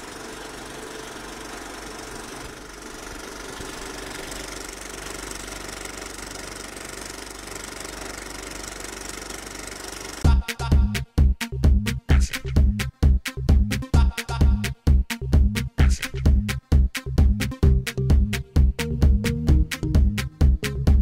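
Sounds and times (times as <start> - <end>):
small motor humming: 0.0 - 10.2
loud music with strong beat: 10.2 - 21.0.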